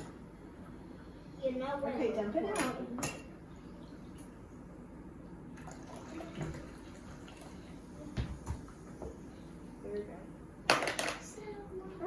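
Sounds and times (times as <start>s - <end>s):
liquid trickling and splashing: 5.6s - 7.7s.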